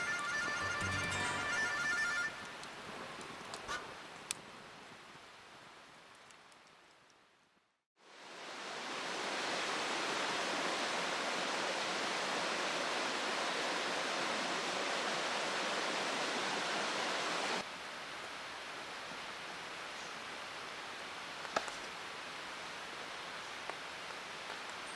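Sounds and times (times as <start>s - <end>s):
mountain stream flowing: 8.0s - 24.9s.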